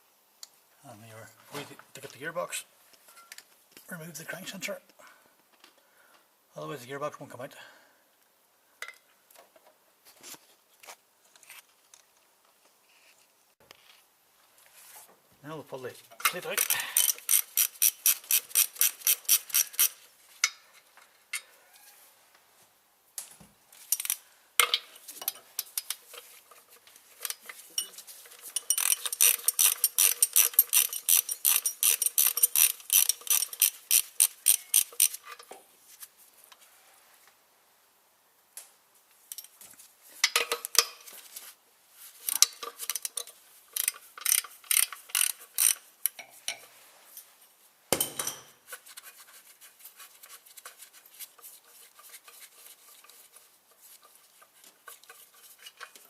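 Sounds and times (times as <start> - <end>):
hand ratchet clicking: 16.2 - 20.6, 23.9 - 26.0, 28.3 - 35.5, 42.2 - 46.3.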